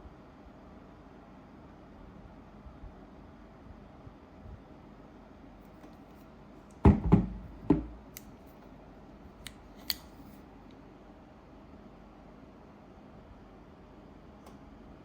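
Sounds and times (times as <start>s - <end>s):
hard objects knocking: 6.8s - 8.0s.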